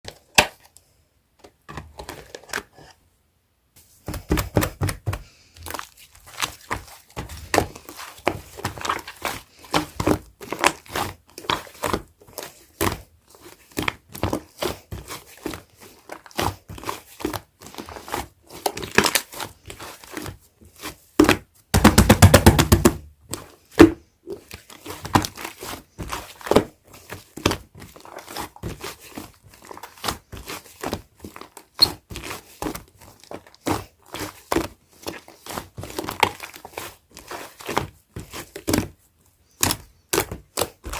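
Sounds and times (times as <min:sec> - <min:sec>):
slime popping and squelching: 0:04.1 - 0:20.4.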